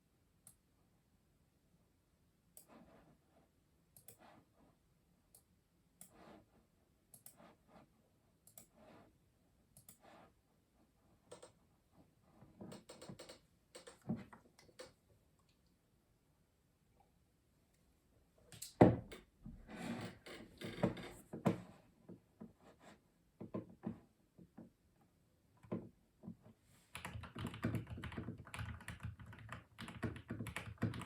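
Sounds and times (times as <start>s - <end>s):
mechanical keyboard keystrokes: 27.0s - 31.0s.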